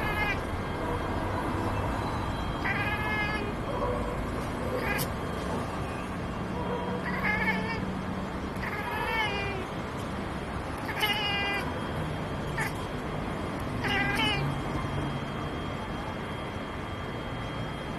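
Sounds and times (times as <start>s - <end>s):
cat chirping: 0.0s - 0.5s, 2.6s - 3.6s, 4.7s - 5.3s, 7.0s - 7.9s, 8.5s - 9.8s, 10.7s - 11.8s, 12.4s - 12.9s, 13.8s - 14.8s.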